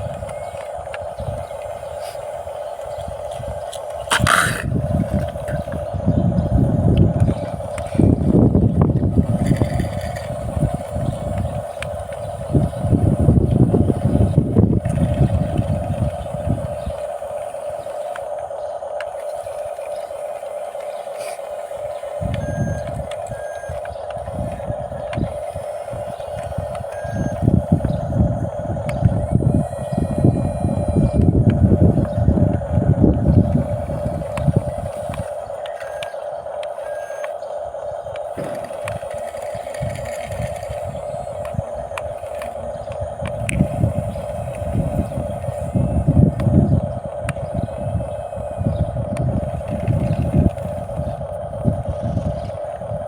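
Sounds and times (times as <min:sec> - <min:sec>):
electric motor whine: 0:00.0 - 0:53.0
low rumbling noise: 0:00.0 - 0:53.0
reversing beeper: 0:15.3 - 0:42.9.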